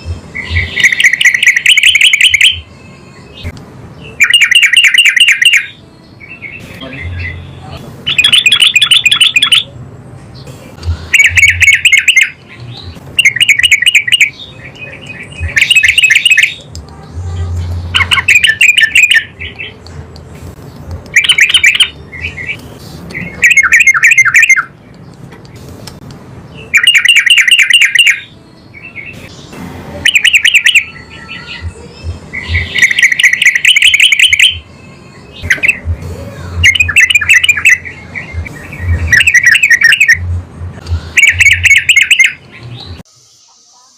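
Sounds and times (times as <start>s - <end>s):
bulbul singing bubbly phrases: 0.5s - 9.7s, 10.7s - 20.0s, 21.1s - 22.6s, 30.0s - 43.9s.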